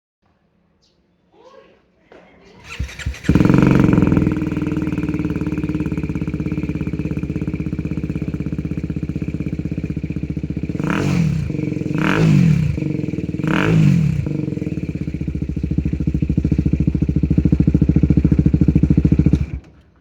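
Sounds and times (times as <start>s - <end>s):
engine cranking: 2.6s - 5.7s, 17.8s - 20.0s
motorcycle engine idling: 2.6s - 20.0s.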